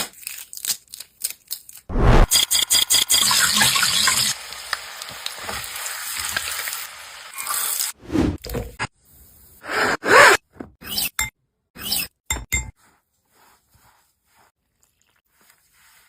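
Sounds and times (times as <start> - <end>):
short sound with rising tone: 1.9 - 2.3
food sizzling in hot oil: 2.4 - 8.0.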